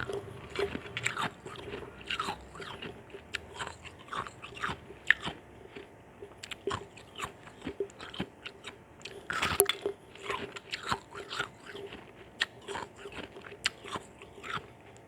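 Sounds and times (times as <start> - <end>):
ice crunched between teeth: 6.5 - 14.7.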